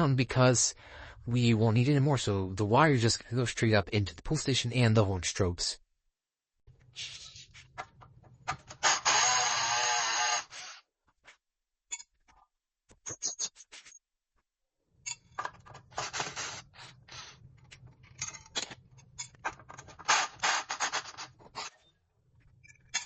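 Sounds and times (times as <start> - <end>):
rubbing and scraping: 15.6 - 18.1.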